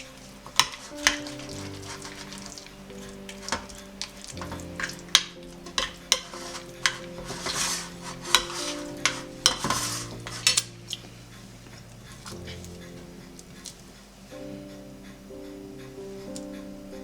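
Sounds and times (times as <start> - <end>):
spoon scraping in a pot: 0.0 - 11.1
soft background music: 0.0 - 17.0.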